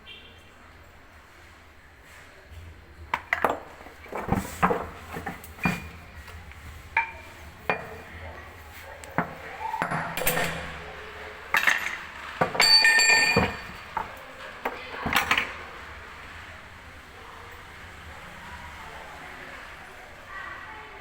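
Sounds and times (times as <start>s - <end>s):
metallic clanks and knocks: 3.1s - 8.1s, 9.1s - 15.7s
scraping ringing metal clatter: 10.2s - 14.4s.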